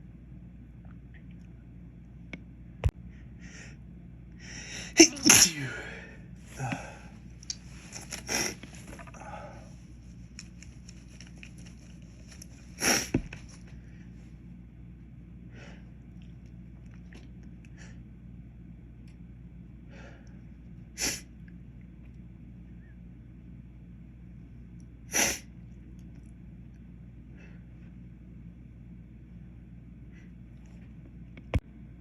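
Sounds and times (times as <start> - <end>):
man sneezing: 4.9 - 6.0
sniffs and breaths: 5.6 - 14.2.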